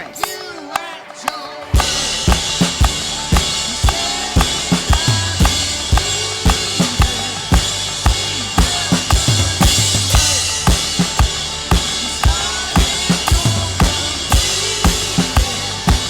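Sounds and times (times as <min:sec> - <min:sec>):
drum kit rock beat: 0:00.0 - 0:16.0
band playing bass: 0:01.7 - 0:16.0.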